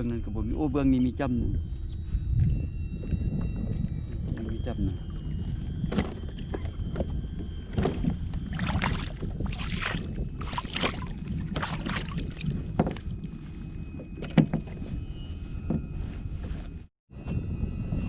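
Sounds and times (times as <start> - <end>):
wind rumbling on microphone: 0.0 - 18.0
water swishes and splashes: 5.0 - 15.0.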